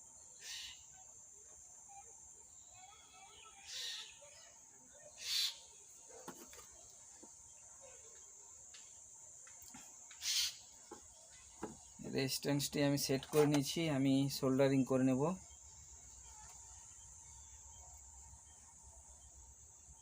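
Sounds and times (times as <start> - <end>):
short hissing rustles: 9.9 - 10.8
high-pitched insect chirring: 10.1 - 10.8.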